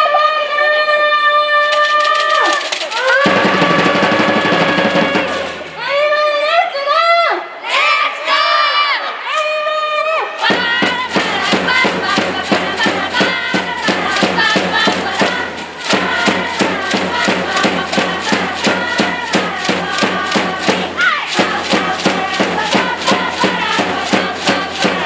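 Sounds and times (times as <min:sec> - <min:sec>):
fast steady beat: 0:02.1 - 0:05.9, 0:10.4 - 0:25.0
crowd singing in unison: 0:03.3 - 0:06.0, 0:10.4 - 0:25.0.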